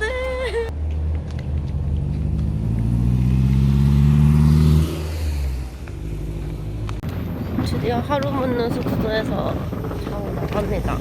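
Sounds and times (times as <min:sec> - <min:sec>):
vehicle engine accelerating: 0:00.7 - 0:11.0
steady low rumble: 0:05.7 - 0:11.0.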